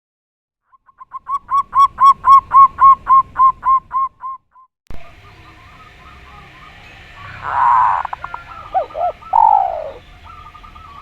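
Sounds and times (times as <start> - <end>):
distant bird calls: 0.7 - 11.0
bird calling short notes: 7.2 - 11.0.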